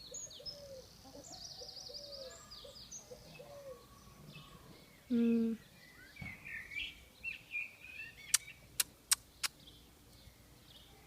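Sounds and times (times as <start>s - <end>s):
bird chirps: 0.0s - 11.0s
sharp clicks: 8.3s - 9.6s.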